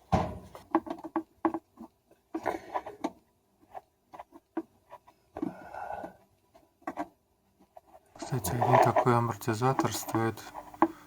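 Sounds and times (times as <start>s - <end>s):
thump: 0.1s - 0.5s.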